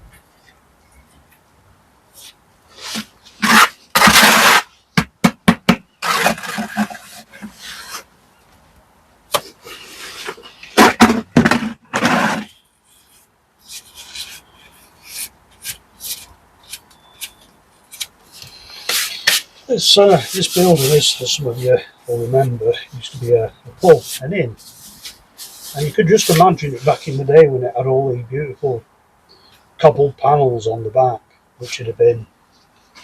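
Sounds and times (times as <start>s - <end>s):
hand tools scraping brickwork: 2.2s - 4.7s, 6.0s - 8.1s, 9.5s - 27.3s
sharp knocks: 5.0s - 6.9s, 10.8s - 12.5s.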